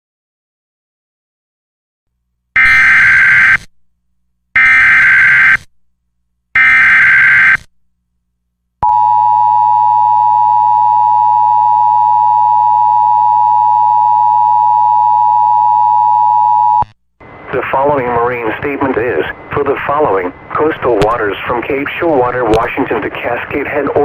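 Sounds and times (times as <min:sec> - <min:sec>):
steady attention tone: 0:08.8 - 0:24.0.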